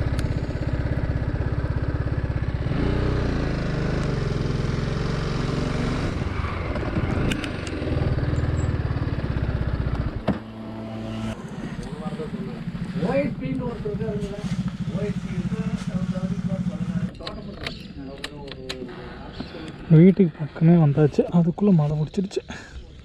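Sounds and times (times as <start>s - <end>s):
motorcycle engine revving: 0.0s - 17.9s.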